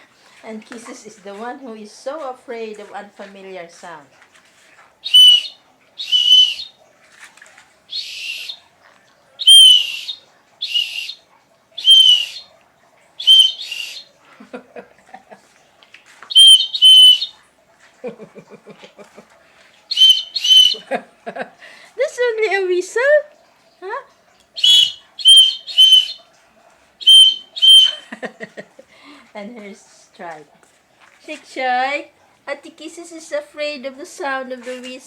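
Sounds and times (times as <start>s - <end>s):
whistle blasts: 5.1s - 6.7s, 9.4s - 11.2s, 11.8s - 12.4s, 13.2s - 14.0s, 16.3s - 17.3s, 19.9s - 20.8s, 24.6s - 26.2s, 27.0s - 28.0s.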